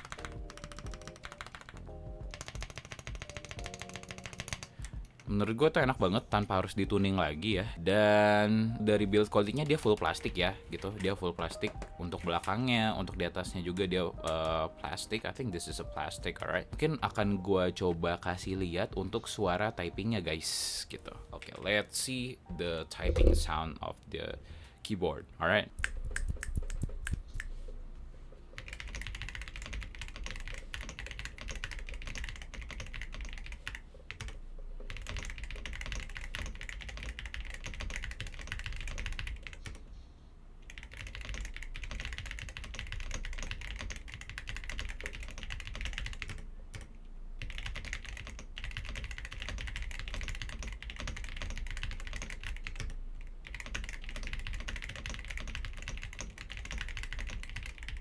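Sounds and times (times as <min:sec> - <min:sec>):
fast mechanical keyboard typing: 0:00.0 - 0:07.1, 0:08.9 - 0:14.6, 0:28.6 - 0:39.8, 0:40.7 - 0:58.0.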